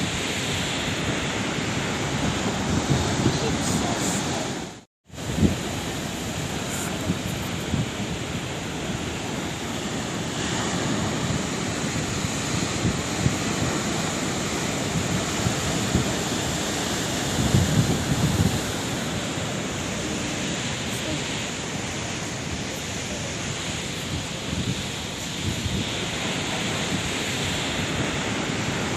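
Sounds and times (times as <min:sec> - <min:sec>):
sea waves breaking on shore: 0:00.0 - 0:28.9
wind buffeting microphone: 0:00.0 - 0:28.9.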